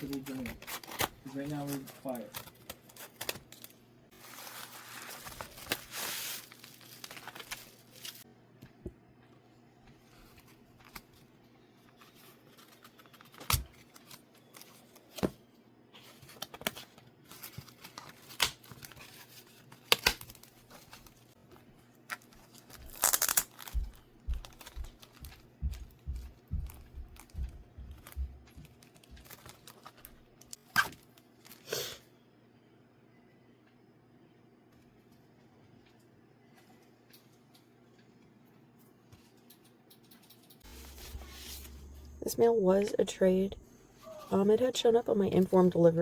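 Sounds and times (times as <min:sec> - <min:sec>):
packaging crinkling: 0:00.0 - 0:08.2, 0:21.9 - 0:26.0, 0:26.6 - 0:31.6
packaging tearing: 0:00.2 - 0:08.2, 0:22.1 - 0:23.8.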